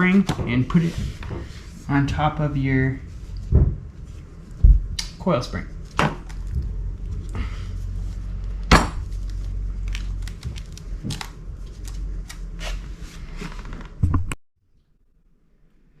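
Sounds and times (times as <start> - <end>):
steady low hum: 0.0 - 14.2.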